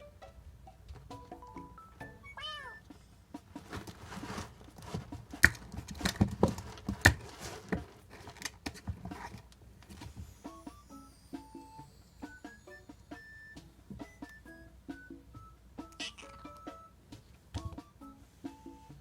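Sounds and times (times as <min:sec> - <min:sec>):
kitten meowing: 0:02.2 - 0:02.8, 0:16.0 - 0:16.4
soft scuffs and knocks: 0:03.4 - 0:10.3.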